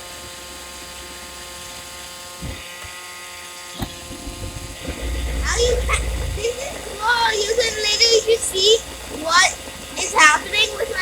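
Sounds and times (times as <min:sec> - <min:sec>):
robot vacuum motor hum: 0:02.2 - 0:11.0.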